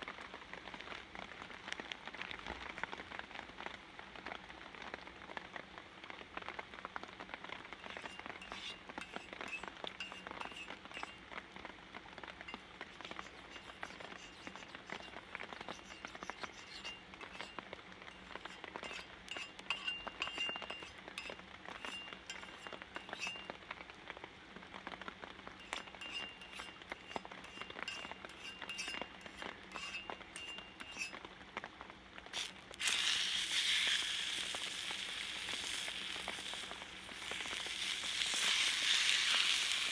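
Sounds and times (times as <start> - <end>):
rain dripping and pattering: 0.0 - 7.8
fish sizzling on a hot griddle: 6.2 - 11.3, 12.5 - 23.3, 32.3 - 39.9.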